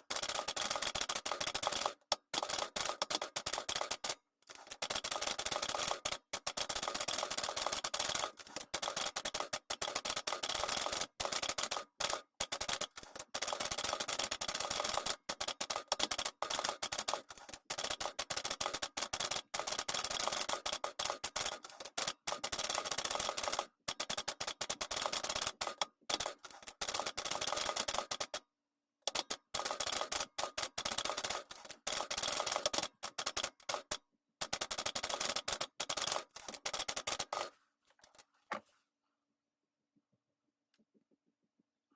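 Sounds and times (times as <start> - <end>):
typewriter bell ping: 3.4 - 4.2, 12.4 - 12.9, 21.0 - 21.6, 25.6 - 26.2, 30.8 - 31.4, 35.9 - 37.4.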